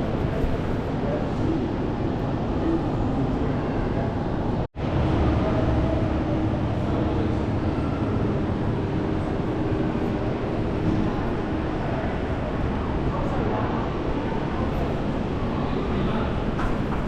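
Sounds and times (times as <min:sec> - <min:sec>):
faint hum: 0:00.0 - 0:17.0
vehicle rumbling: 0:00.0 - 0:17.0.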